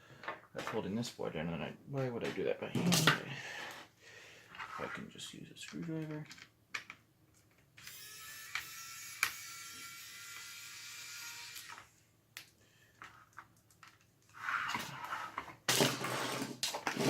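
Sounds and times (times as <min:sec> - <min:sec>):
scraping and rattling: 0:14.3 - 0:17.0.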